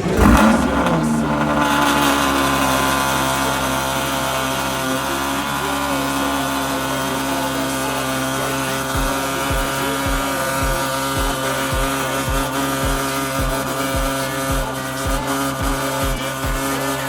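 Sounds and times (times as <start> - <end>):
car engine idling: 0.0 - 17.0
music with deep bass kick: 8.8 - 16.8.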